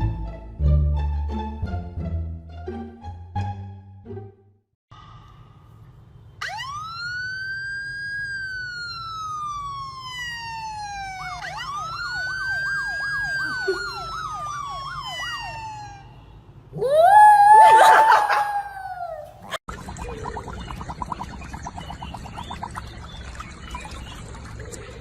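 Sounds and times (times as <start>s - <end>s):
emergency siren wailing: 6.4s - 19.2s
warbling yelp siren tone: 6.4s - 19.6s.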